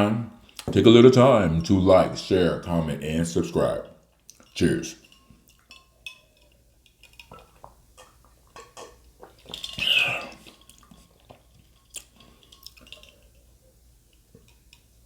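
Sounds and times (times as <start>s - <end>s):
person drinking: 4.2s - 13.6s
ice clinking in glass: 4.4s - 13.4s.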